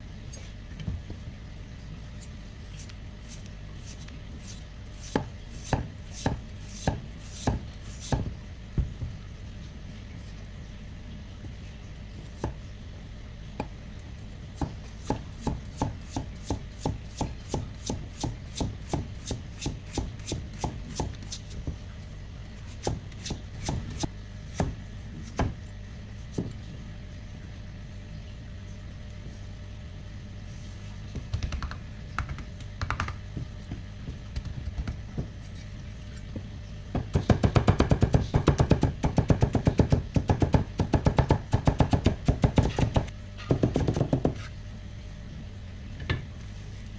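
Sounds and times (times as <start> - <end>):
knife chopping on cutting board: 2.8 - 8.4, 14.6 - 21.5, 22.8 - 25.6, 37.0 - 44.5.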